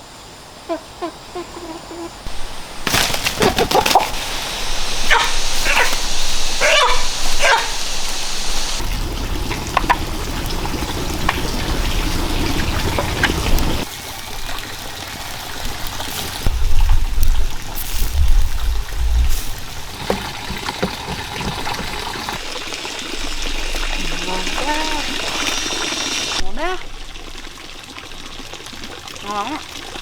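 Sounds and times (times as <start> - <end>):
low rumbling noise: 4.1 - 13.9, 16.5 - 19.9
short sharp animal calls: 5.0 - 8.8.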